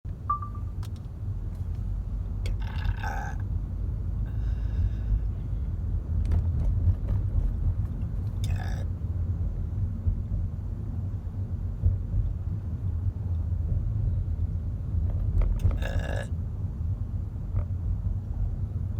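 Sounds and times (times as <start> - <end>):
car driving rumble inside cabin: 0.1 - 18.9
woman burping: 2.5 - 3.4, 8.4 - 8.8, 15.8 - 16.3.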